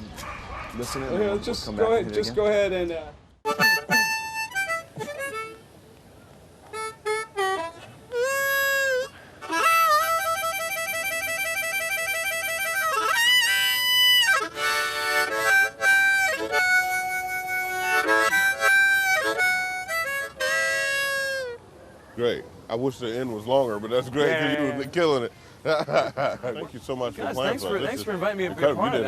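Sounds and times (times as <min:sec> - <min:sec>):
blues harmonica playing: 0:03.4 - 0:05.7, 0:06.7 - 0:21.6.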